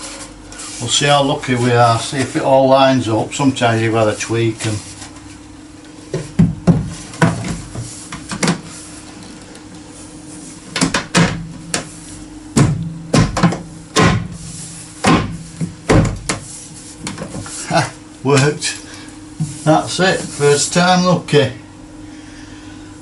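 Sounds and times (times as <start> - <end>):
faint steady hum: 0.0 - 23.0
wooden wall panel knocking: 12.6 - 14.3, 15.0 - 16.4.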